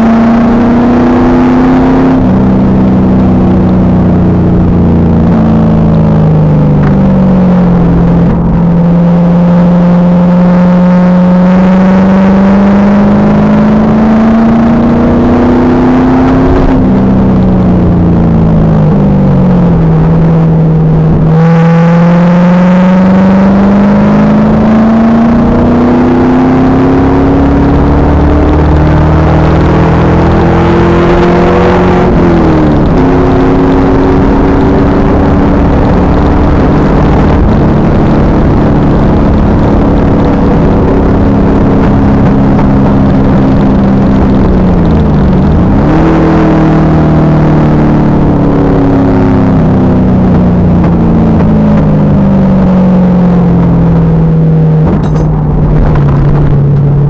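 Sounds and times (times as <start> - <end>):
car engine revving: 0.0 - 57.0.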